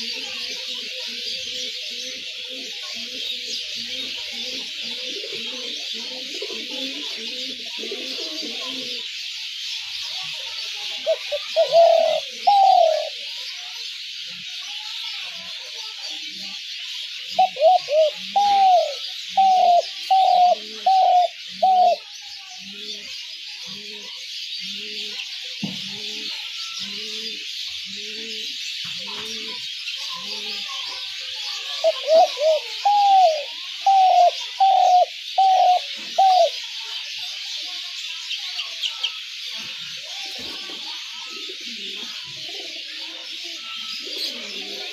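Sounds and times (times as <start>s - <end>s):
fainter lower dove coos: 0.0s - 9.0s, 11.0s - 13.1s, 17.4s - 22.0s, 31.8s - 36.5s, 44.0s - 44.9s
dove cooing: 0.0s - 9.1s, 11.0s - 13.2s, 17.3s - 22.1s, 25.9s - 29.6s, 31.6s - 36.6s, 41.2s - 44.9s.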